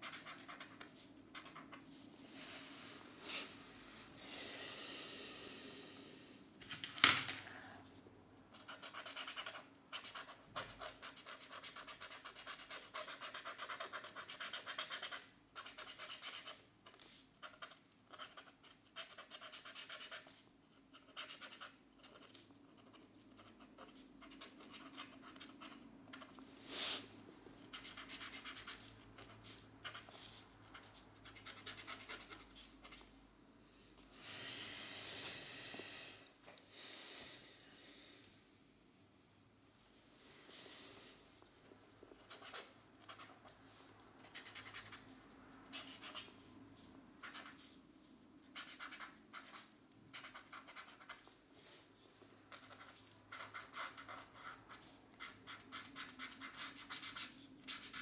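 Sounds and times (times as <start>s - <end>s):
markers scratching on paper: 0.0s - 1.9s, 8.5s - 27.1s, 27.7s - 33.1s, 45.7s - 46.4s, 47.2s - 47.7s, 48.5s - 51.4s, 52.5s - 58.0s.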